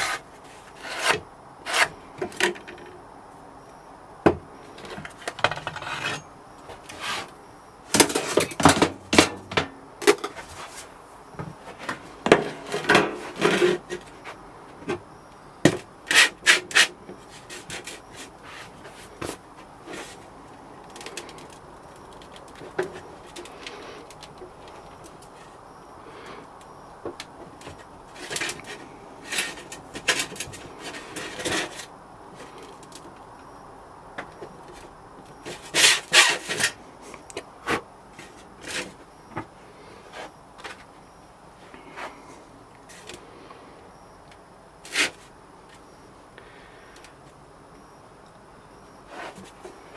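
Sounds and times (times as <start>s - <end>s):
scraping and rubbing sand: 0.0s - 1.9s, 6.8s - 7.3s.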